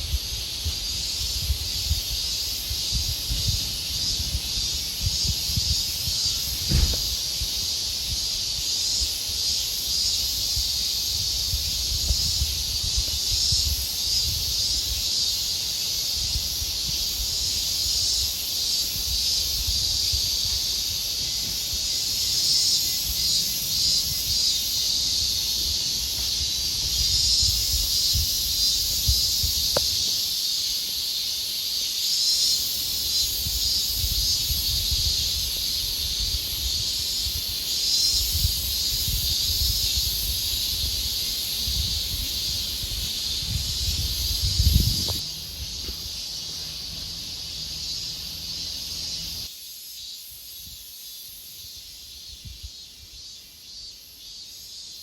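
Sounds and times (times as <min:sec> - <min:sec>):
wind rumbling on microphone: 0:00.0 - 0:09.1, 0:10.2 - 0:15.1, 0:18.9 - 0:30.2, 0:33.2 - 0:47.1
cicadas buzzing: 0:00.0 - 0:55.0.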